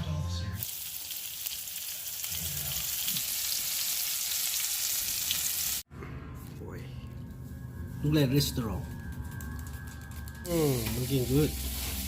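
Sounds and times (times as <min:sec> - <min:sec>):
fish frying in hot oil: 0:00.6 - 0:05.8.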